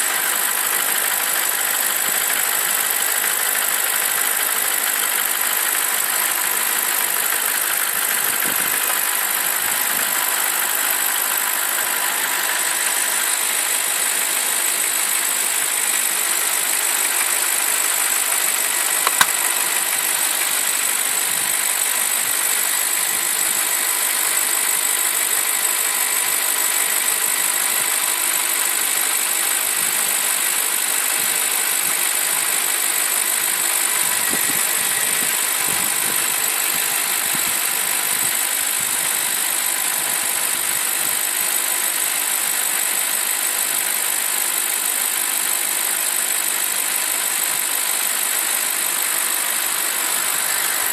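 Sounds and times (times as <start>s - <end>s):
car engine idling: 0.0s - 50.9s
sharp click: 19.0s - 19.5s.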